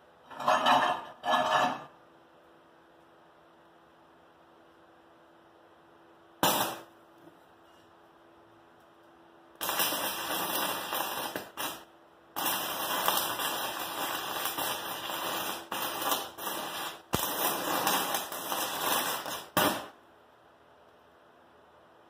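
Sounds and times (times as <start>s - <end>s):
welding arc crackling and sizzling: 6.4s - 7.2s, 9.6s - 20.0s.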